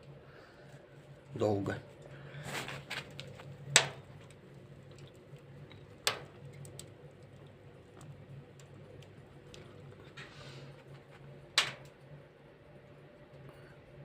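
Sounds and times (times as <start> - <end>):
firewood crackling in a stove: 0.0 - 14.0
sharp pops of burning wood: 2.4 - 10.2, 10.8 - 12.1.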